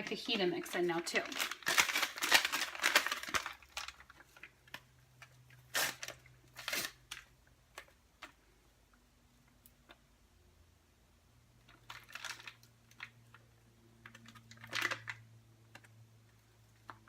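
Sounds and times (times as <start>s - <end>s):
seasoning packet crinkling: 0.3s - 4.8s.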